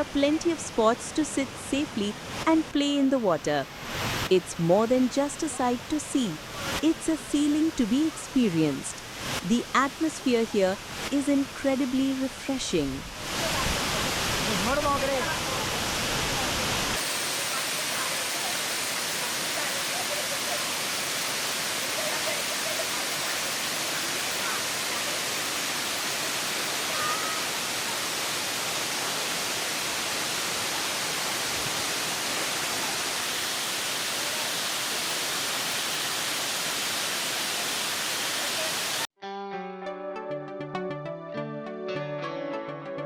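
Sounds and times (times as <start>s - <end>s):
waterfall rushing: 13.0s - 39.1s.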